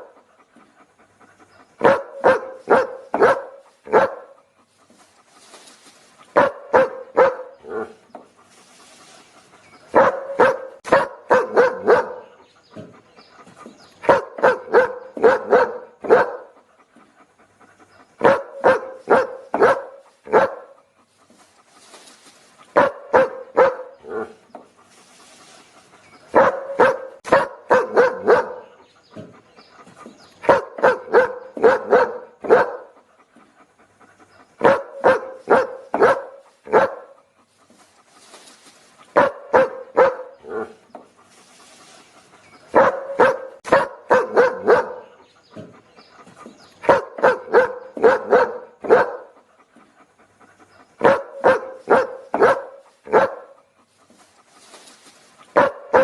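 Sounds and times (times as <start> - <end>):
dog barking: 0.0 - 0.2, 1.8 - 4.4, 6.3 - 8.0, 9.9 - 12.4, 14.0 - 16.6, 18.2 - 20.8, 22.7 - 24.4, 26.3 - 29.3, 30.4 - 33.0, 34.6 - 37.2, 39.1 - 40.8, 42.7 - 45.7, 46.8 - 49.4, 51.0 - 53.6, 55.5 - 56.0.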